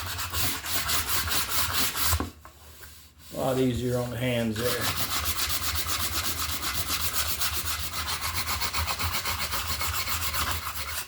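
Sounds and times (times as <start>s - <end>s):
sandpaper scrubbing wood: 0.0s - 2.2s, 4.5s - 11.0s.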